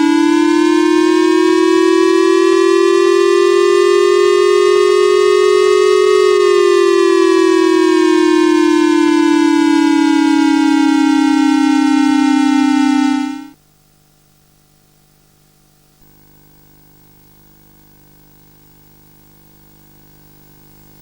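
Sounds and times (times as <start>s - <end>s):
civil defense siren falling tone: 0.0s - 13.6s
faint hum and hiss: 12.6s - 21.0s.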